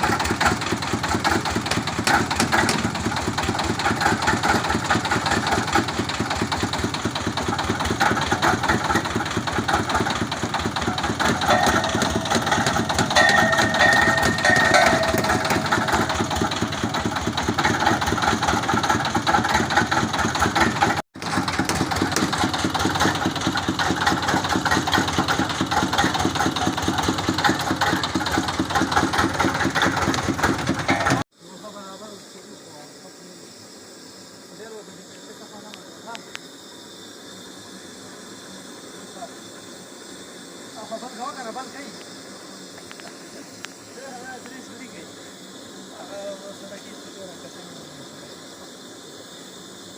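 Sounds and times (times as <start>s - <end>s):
boring machine engine pulsing: 0.0s - 32.0s.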